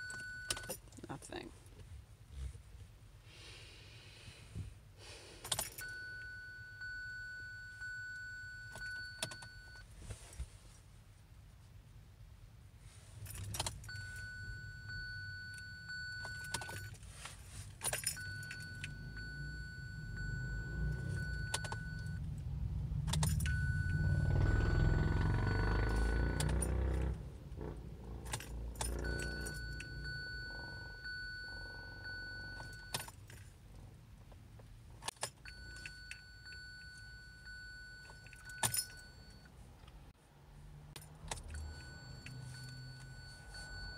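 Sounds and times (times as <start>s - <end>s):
keys jangling in ignition: 5.4s - 6.9s, 8.5s - 9.8s, 13.2s - 22.4s, 23.0s - 27.3s, 28.1s - 33.6s, 35.0s - 40.0s, 41.0s - 43.9s
steady electronic beep: 23.4s - 26.3s.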